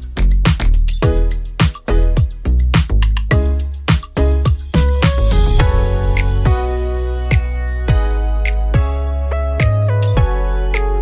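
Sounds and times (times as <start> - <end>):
deep kick drum: 0.0 - 8.2
background music with beat: 0.0 - 11.0.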